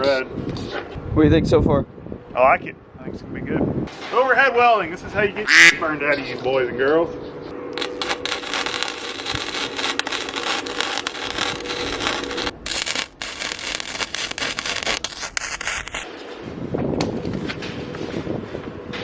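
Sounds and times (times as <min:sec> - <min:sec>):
welder arc crackling: 0:07.8 - 0:16.1.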